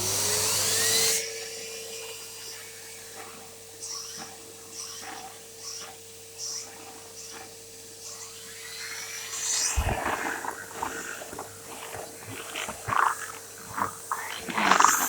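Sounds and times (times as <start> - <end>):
vacuum cleaner humming: 8.0 - 15.0.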